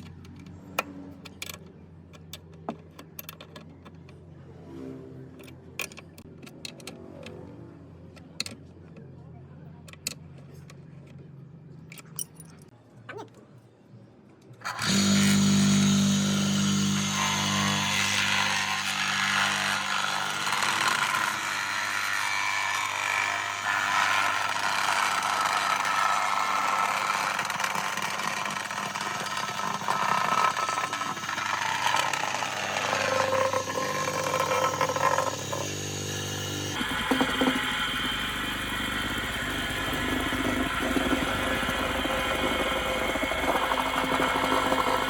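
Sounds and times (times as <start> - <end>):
plate compactor engine running: 14.6 - 22.0, 22.6 - 45.0.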